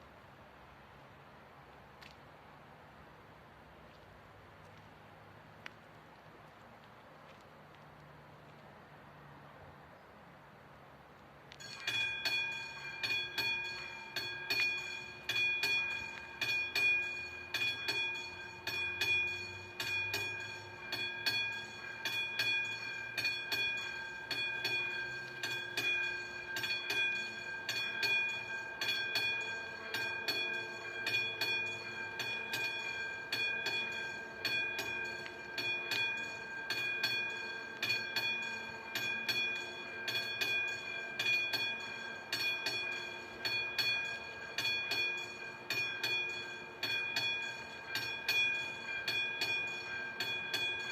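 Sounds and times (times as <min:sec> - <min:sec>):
level crossing bell ringing: 0:11.6 - 0:50.9.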